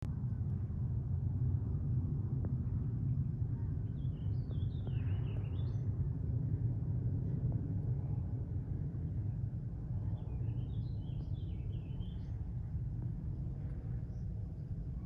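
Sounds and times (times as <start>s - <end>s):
low outdoor rumble: 0.0s - 15.0s
birds chirping: 3.9s - 5.8s, 10.2s - 12.4s.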